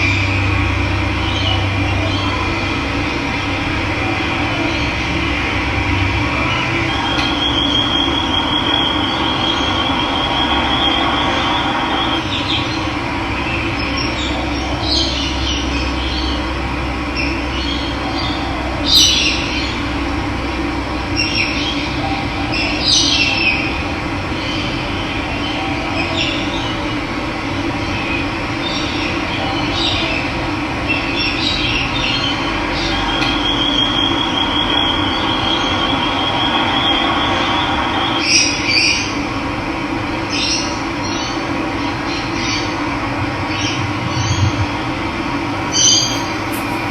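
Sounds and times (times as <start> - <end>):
birds calling: 45.6 - 46.9.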